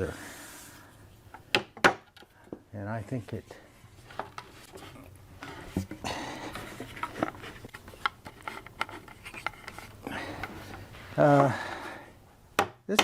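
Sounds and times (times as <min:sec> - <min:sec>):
wood rubbing: 0:02.9 - 0:12.0.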